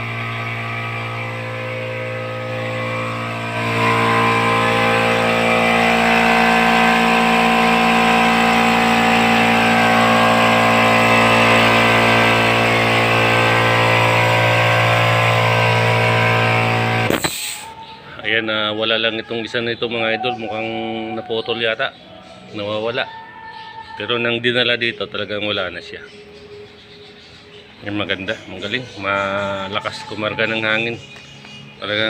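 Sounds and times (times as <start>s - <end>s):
air compressor running: 0.0s - 17.9s.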